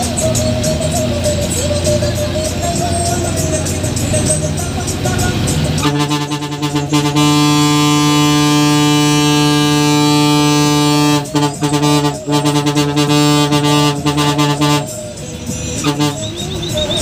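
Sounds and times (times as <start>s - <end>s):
bus air horn blasting: 5.6s - 17.0s.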